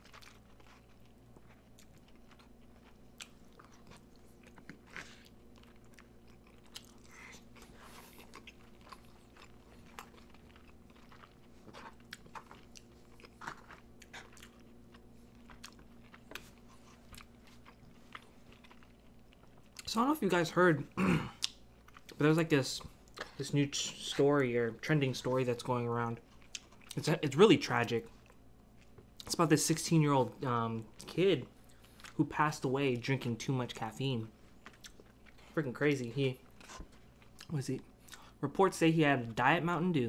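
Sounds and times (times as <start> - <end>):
faint steady hum: 0.0 - 40.0
wet mouth chewing clicks: 34.6 - 35.1.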